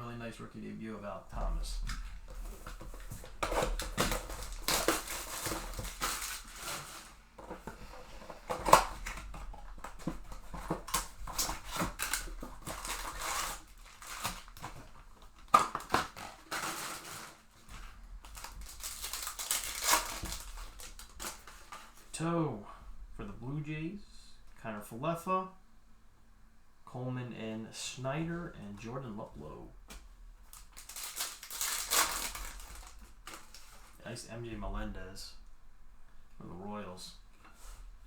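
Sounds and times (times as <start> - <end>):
cards rustling: 1.4 - 22.1, 30.5 - 34.0
foil wrappers crinkling and tearing: 1.5 - 22.1, 30.5 - 34.0.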